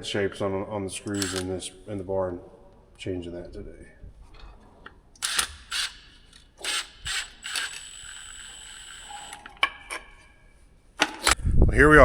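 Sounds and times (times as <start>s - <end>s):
cordless drill whining: 1.1s - 1.5s, 6.6s - 9.5s.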